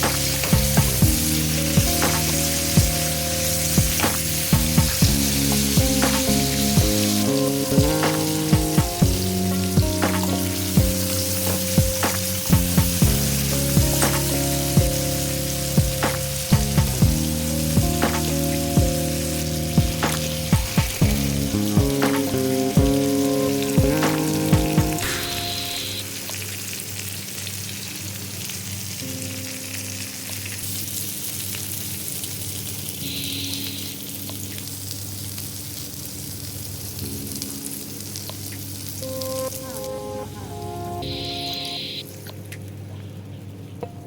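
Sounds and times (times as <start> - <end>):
background music: 0.0 - 26.8, 37.1 - 42.4
chicken sizzling in hot oil: 0.0 - 39.8.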